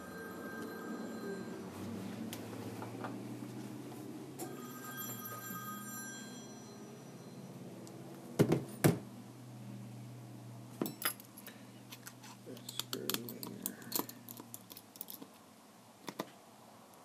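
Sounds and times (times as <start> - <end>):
bell-like ringing: 0.0 - 2.2, 4.4 - 7.8
steady low hum: 0.0 - 17.0.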